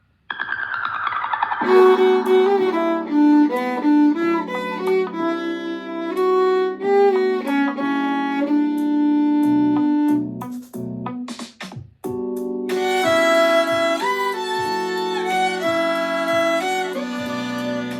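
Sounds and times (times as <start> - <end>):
pop backing track: 0.3 - 17.9
violin melody: 1.6 - 10.5, 12.7 - 17.9.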